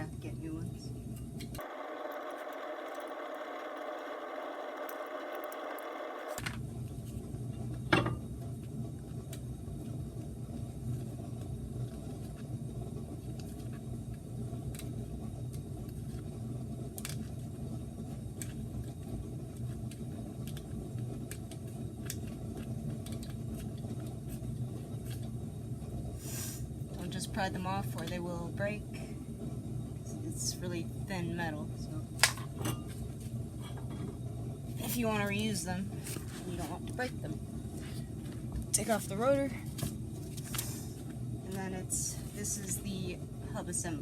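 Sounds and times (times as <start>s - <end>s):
steady low hum: 0.0s - 44.0s
pitched whirring: 1.6s - 6.4s.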